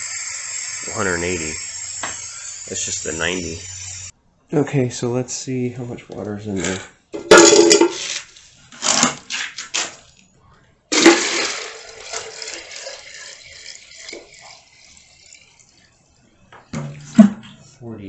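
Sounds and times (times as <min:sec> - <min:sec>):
water pouring into container: 0:10.9 - 0:15.9.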